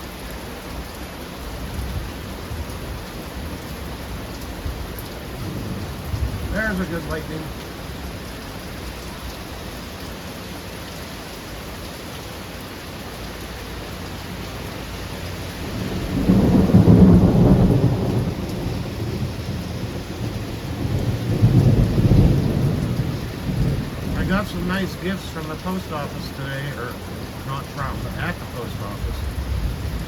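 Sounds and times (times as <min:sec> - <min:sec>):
steady rain falling: 0:00.0 - 0:30.0
thunder rumbling: 0:04.7 - 0:08.0, 0:15.6 - 0:30.0.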